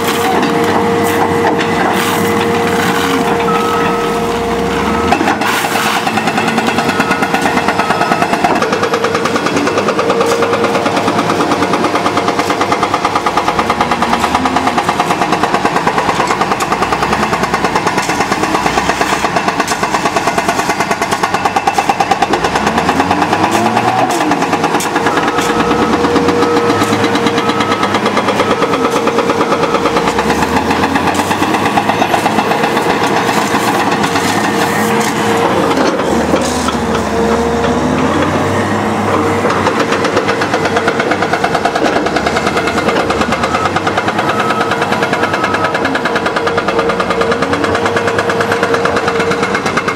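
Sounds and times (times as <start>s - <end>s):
diesel construction machine engine: 0.0s - 49.9s.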